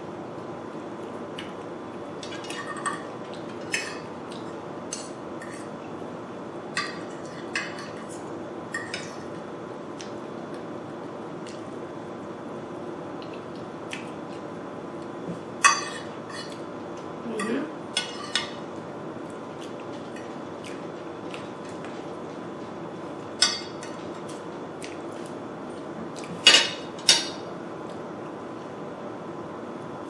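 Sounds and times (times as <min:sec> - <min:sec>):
low background hum: 0:00.0 - 0:30.0
cutlery clinking against a dish: 0:02.2 - 0:05.7, 0:08.8 - 0:09.2, 0:15.6 - 0:16.6, 0:17.4 - 0:18.6, 0:23.4 - 0:24.3, 0:26.4 - 0:27.4.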